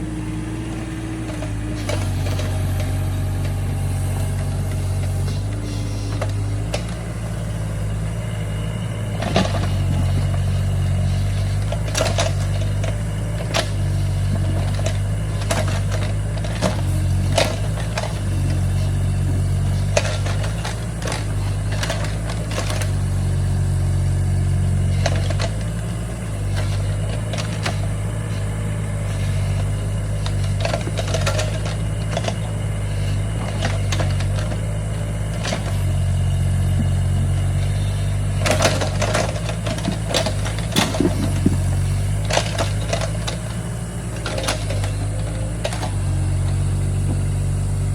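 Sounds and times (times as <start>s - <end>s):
excavator diesel engine: 0.0s - 47.9s
short knocks: 38.4s - 43.6s.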